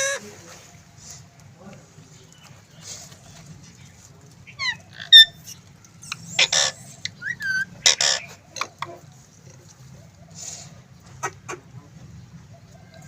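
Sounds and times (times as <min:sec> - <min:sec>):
parrot squawking: 0:04.5 - 0:09.0.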